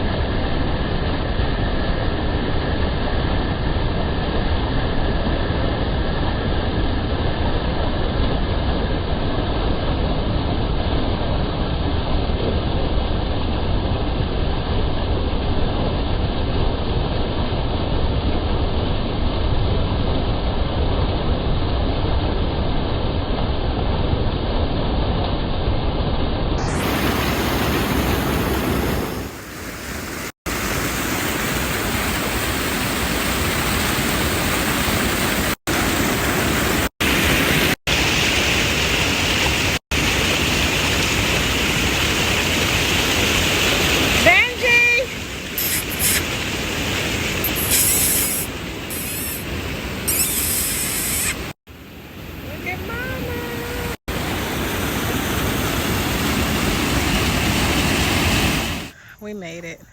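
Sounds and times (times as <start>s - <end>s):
small waterfall rushing: 26.6s - 58.9s.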